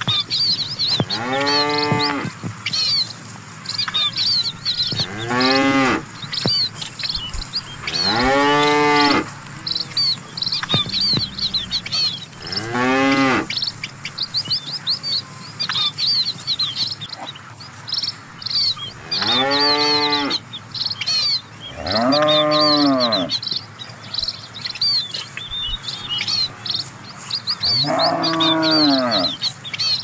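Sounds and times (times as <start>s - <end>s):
small birds chirping: 0.0s - 30.0s
cattle mooing: 1.0s - 2.4s, 4.8s - 6.2s, 7.6s - 10.1s, 10.8s - 13.6s, 19.0s - 20.4s, 21.7s - 23.3s, 27.7s - 29.4s.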